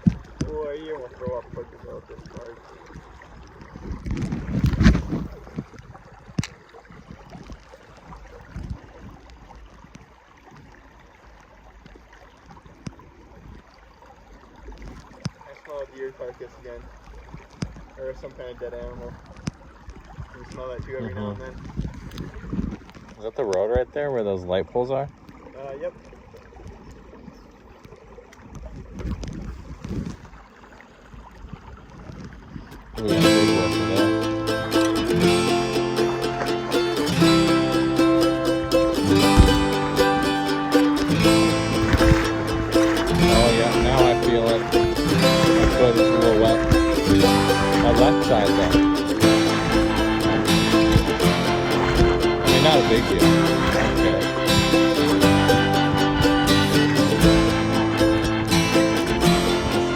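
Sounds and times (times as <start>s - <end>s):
wind rumbling on microphone: 0.0s - 10.1s, 18.8s - 23.2s, 28.4s - 33.0s, 37.0s - 59.9s
faint water stream: 0.0s - 59.9s
water sloshing around legs: 25.2s - 59.9s.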